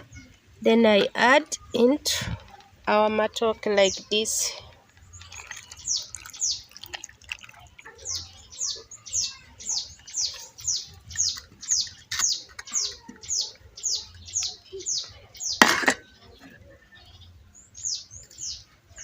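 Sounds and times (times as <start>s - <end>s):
bird chirping: 3.5s - 19.0s.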